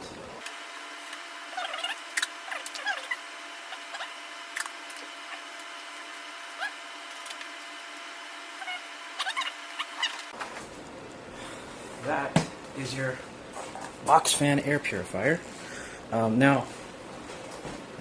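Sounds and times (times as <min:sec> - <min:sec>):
faint steady hum: 0:00.0 - 0:18.0
tape squeaks: 0:01.5 - 0:05.6, 0:08.6 - 0:10.4.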